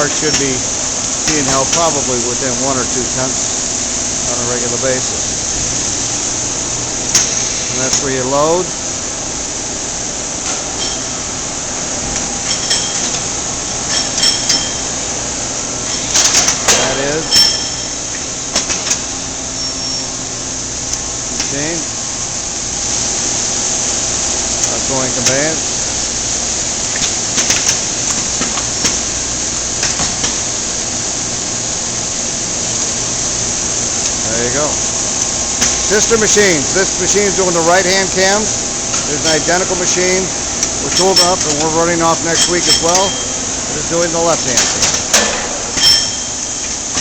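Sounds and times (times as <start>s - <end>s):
ringing metallic clinks: 10.8s - 11.1s, 12.4s - 13.2s, 13.9s - 14.9s, 16.9s - 17.9s, 45.8s - 46.7s.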